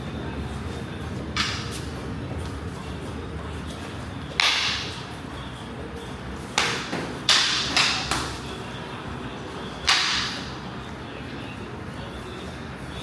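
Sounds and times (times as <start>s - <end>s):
sticks striking with sharp cracks: 4.3s - 5.0s, 6.6s - 8.4s, 9.8s - 10.5s.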